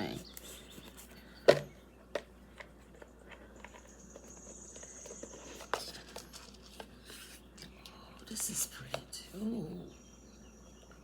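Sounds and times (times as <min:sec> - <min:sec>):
rustling: 0:02.5 - 0:07.8.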